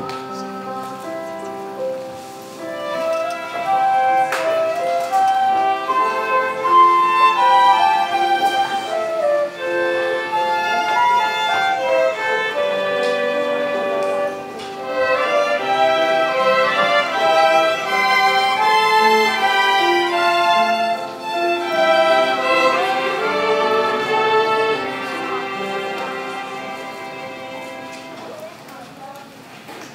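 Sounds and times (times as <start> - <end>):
choir with instrumental accompaniment: 10.4 - 28.0.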